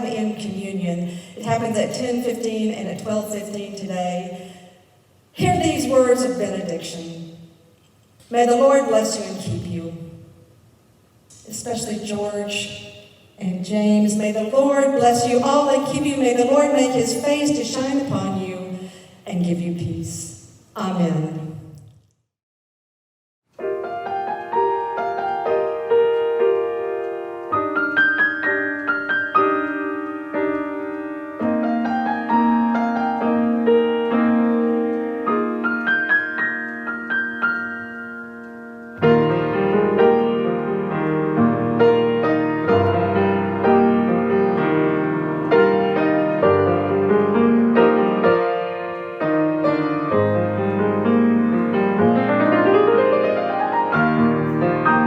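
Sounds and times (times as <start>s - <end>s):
piano music: 23.6s - 55.0s.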